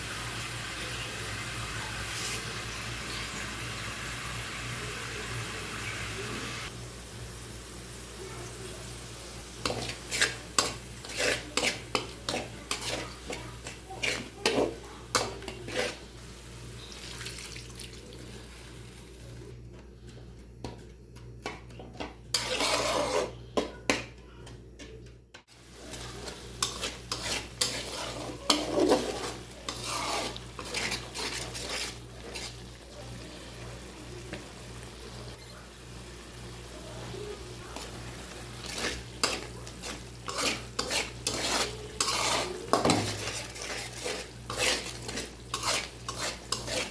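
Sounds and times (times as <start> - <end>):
faint frying sizzle: 0.0 - 20.8, 25.4 - 46.9
spatula scraping metal pan: 9.6 - 16.2, 22.0 - 23.8, 25.8 - 32.8, 37.8 - 46.9.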